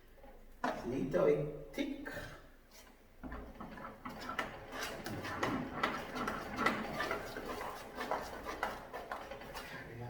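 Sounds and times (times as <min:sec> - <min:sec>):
spoon stirring porridge in a pot: 0:02.7 - 0:10.0.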